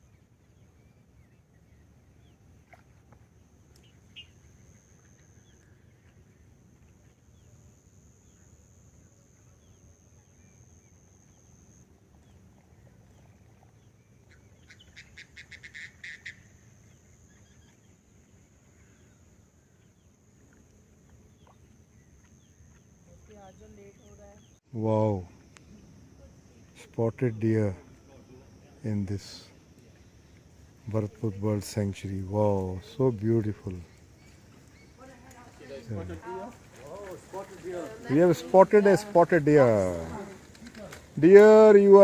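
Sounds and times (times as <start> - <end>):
faint birds calling: 0.0 - 28.0.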